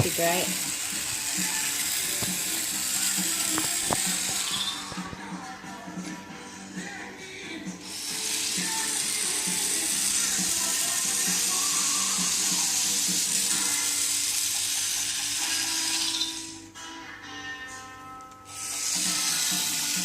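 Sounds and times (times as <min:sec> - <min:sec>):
loud steam hiss: 0:00.0 - 0:04.6, 0:18.6 - 0:20.0
toy train rhythmic chug: 0:00.0 - 0:04.9, 0:07.8 - 0:16.7, 0:18.5 - 0:20.0
toy train tune: 0:00.0 - 0:05.0, 0:07.8 - 0:16.7, 0:18.5 - 0:20.0.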